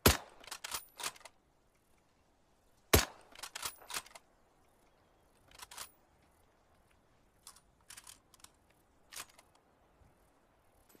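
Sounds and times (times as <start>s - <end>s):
rifle bolt metallic clicks: 0.1s - 2.0s, 3.0s - 4.3s.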